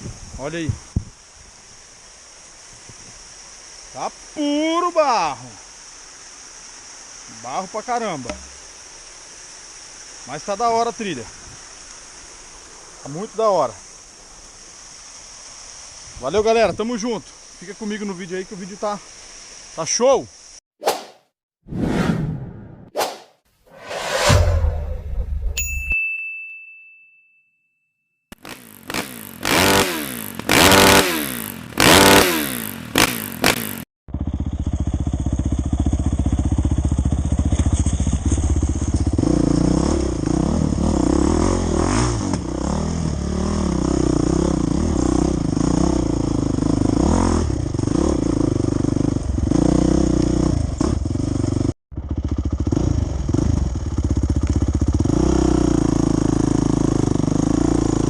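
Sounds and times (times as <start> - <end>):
whooshing sweeps: 21.7 - 25.6
dirt bike engine revving: 28.3 - 58.0.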